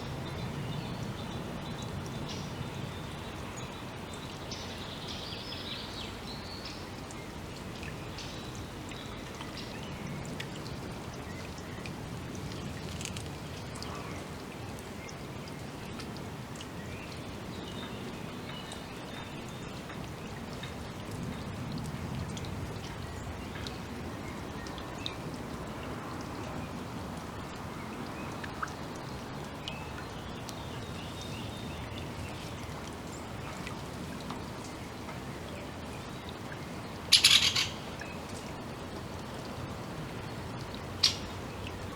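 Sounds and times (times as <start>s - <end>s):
small ticks: 12.5s - 13.4s
steady background hiss: 22.6s - 41.9s
faint bird chirps: 37.1s - 37.8s.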